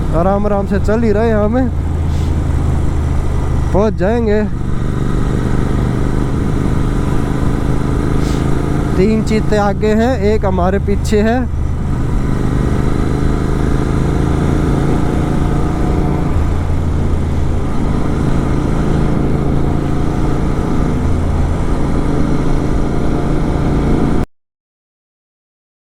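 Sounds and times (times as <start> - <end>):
motorcycle engine cruising: 0.0 - 24.2.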